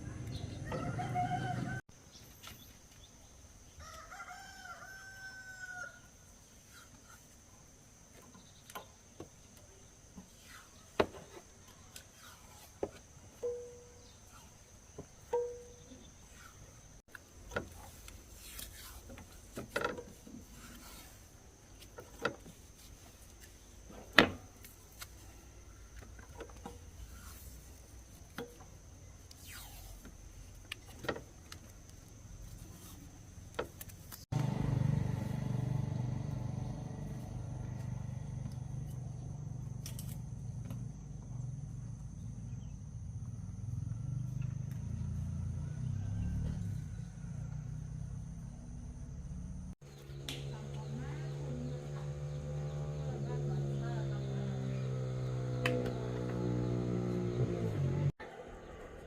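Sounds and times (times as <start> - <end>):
motorcycle engine running: 34.3 - 58.8.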